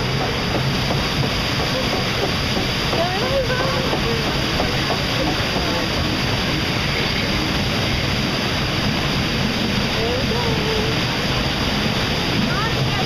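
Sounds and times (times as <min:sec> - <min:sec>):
water rushing around raft: 0:00.0 - 0:13.0
faint voices: 0:02.9 - 0:07.5.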